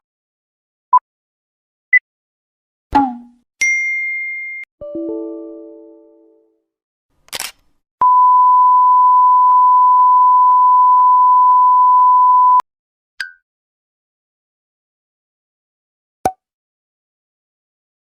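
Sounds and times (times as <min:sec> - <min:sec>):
camera shutter click: 0:07.3 - 0:07.7.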